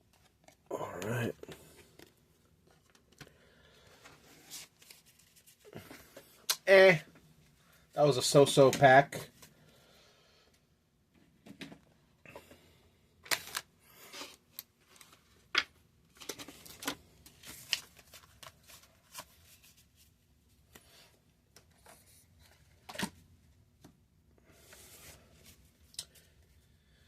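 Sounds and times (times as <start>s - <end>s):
cards slapping and rustling: 13.2s - 20.1s, 21.6s - 23.2s.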